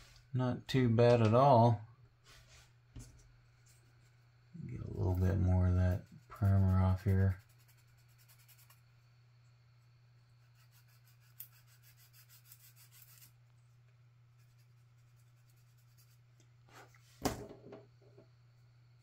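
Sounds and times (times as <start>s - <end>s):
low steady hum: 0.0s - 19.0s
brush rubbing on paper towel: 5.7s - 8.8s, 10.5s - 13.4s.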